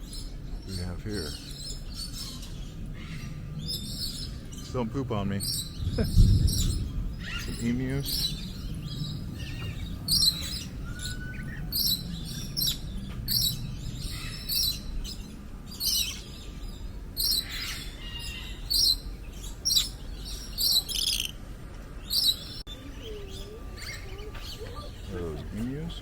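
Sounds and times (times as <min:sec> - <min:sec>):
birds chirping: 0:00.0 - 0:26.0
background murmur: 0:18.0 - 0:26.0.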